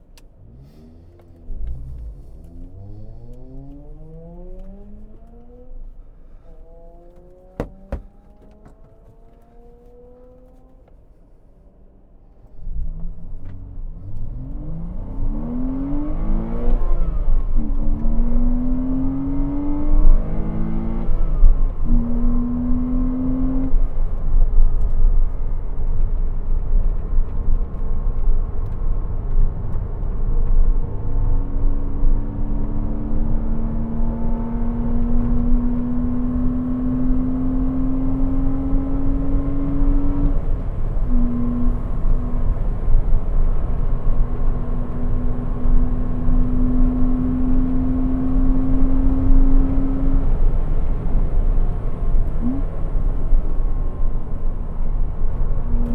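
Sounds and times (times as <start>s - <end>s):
road and wind rumble: 0.0s - 55.9s
car engine revving: 0.3s - 10.8s, 12.9s - 24.3s, 30.8s - 55.9s.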